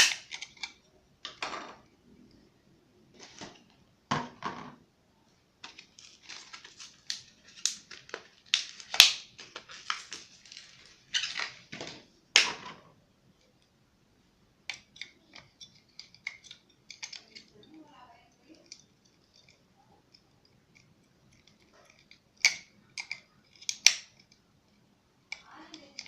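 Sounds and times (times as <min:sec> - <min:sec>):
packaging snapping: 0:05.6 - 0:11.6
packaging crinkling and rustling: 0:05.6 - 0:12.1.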